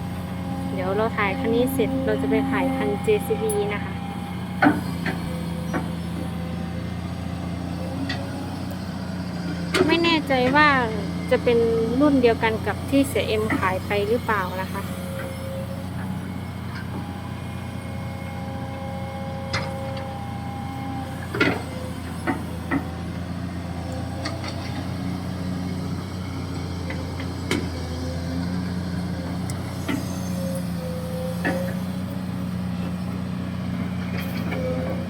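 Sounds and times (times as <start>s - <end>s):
excavator diesel engine running: 0.0s - 35.0s.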